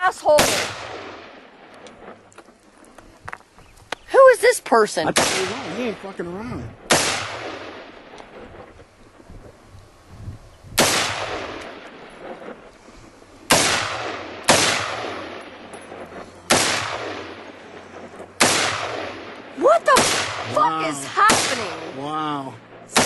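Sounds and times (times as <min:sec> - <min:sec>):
gunshots with echo: 0:00.3 - 0:02.3, 0:05.1 - 0:06.2, 0:06.8 - 0:08.5, 0:10.8 - 0:12.6, 0:13.5 - 0:22.0.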